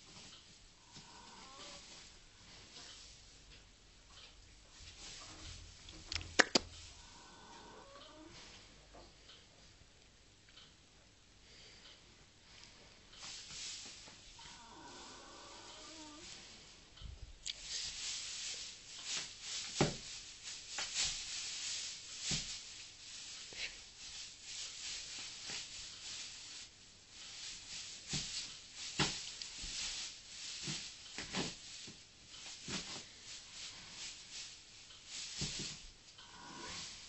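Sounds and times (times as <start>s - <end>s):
horse rustling in bedding: 0.0s - 3.8s, 4.7s - 6.1s, 13.2s - 37.0s.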